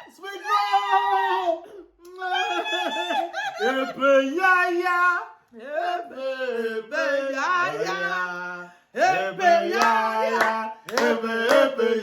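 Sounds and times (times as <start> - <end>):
man and woman singing: 3.6 - 12.0
hand claps: 9.7 - 11.8.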